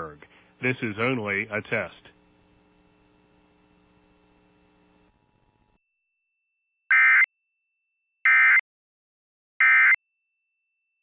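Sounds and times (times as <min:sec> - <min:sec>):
faint steady hum: 0:00.0 - 0:05.8.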